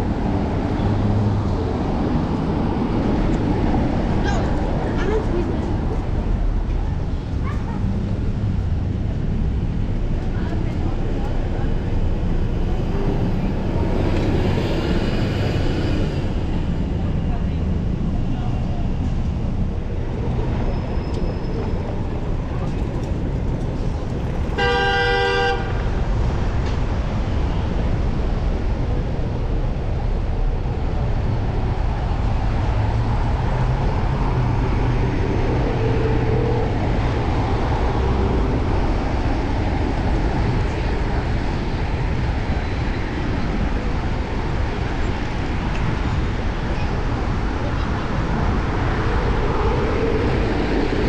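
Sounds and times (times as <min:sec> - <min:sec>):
street traffic: 0:00.0 - 0:51.0
wind rumble: 0:00.0 - 0:51.0
vehicle horn honk: 0:24.6 - 0:25.8.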